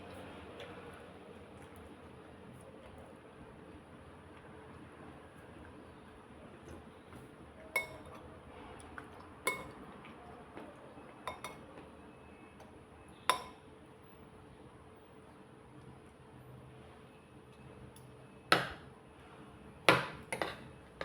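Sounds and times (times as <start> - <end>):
cutlery clinking against a dish: 7.8 - 8.2, 9.5 - 9.8, 11.3 - 11.6, 13.3 - 13.6, 20.1 - 20.7.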